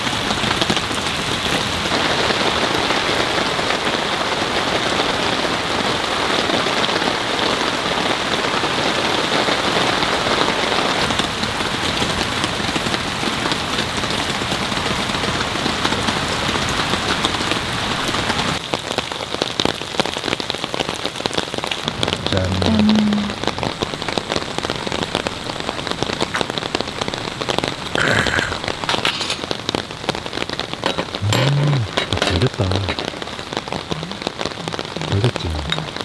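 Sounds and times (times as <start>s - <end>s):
heavy rain pouring: 17.6s - 36.0s.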